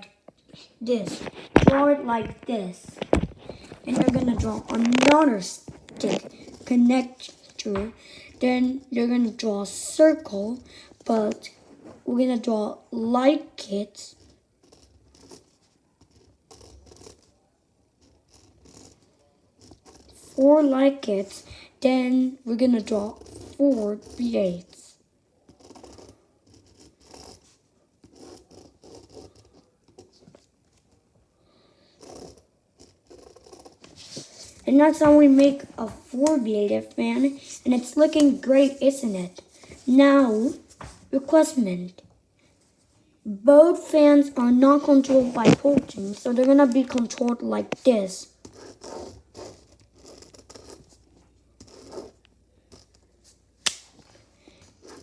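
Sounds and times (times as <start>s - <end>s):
pen scratching on paper: 2.9s - 8.7s, 13.6s - 24.9s, 25.5s - 30.4s, 32.0s - 40.7s, 44.7s - 53.1s, 54.8s - 55.0s.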